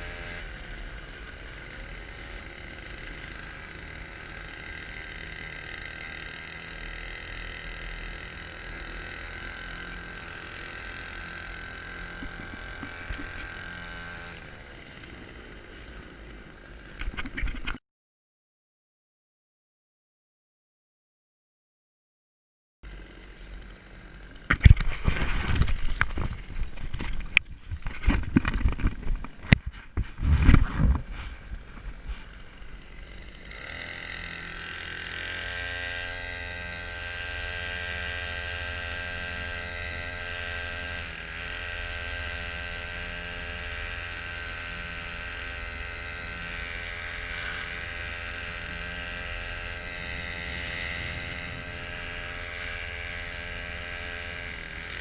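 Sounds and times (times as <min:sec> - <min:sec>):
small boat motor running: 0:00.0 - 0:17.8, 0:22.9 - 0:55.0
knocks and handling noise: 0:24.5 - 0:32.2.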